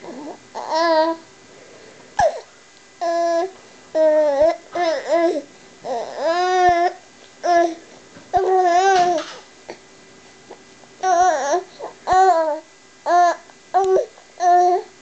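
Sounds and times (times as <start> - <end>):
baby cooing and squealing: 0.0 - 1.2.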